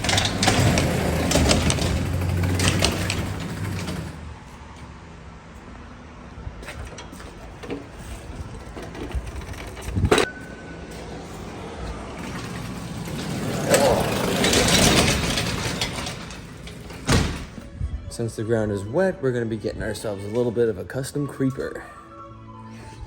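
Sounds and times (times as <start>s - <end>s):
heavy equipment knocking: 0.0s - 4.2s, 12.2s - 17.6s
metallic clank: 0.0s - 4.2s, 12.2s - 17.6s
rustling and scraping: 6.6s - 10.3s.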